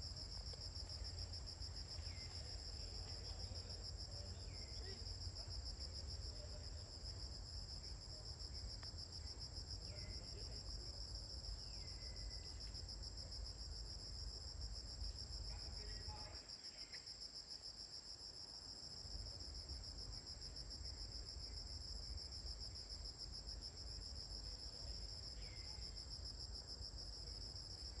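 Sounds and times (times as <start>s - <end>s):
high-pitched insect chorus: 0.2s - 7.0s, 7.6s - 17.2s.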